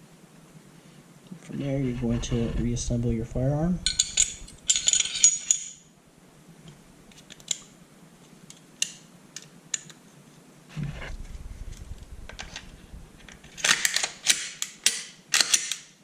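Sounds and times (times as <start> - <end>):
low handling rumble: 1.7 - 4.7, 10.7 - 13.6.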